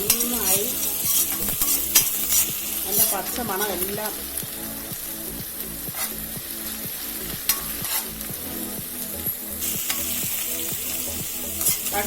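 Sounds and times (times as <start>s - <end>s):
ginger and garlic sizzling in oil: 0.0s - 12.0s
spatula scraping a pan: 0.1s - 3.9s, 7.5s - 8.2s.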